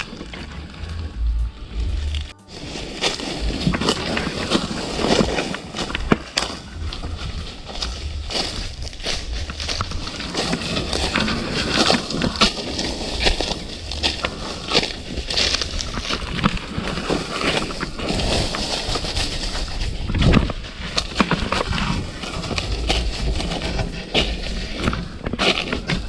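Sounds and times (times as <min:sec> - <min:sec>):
footsteps through undergrowth: 0:00.0 - 0:26.0
low rumble: 0:00.0 - 0:26.0.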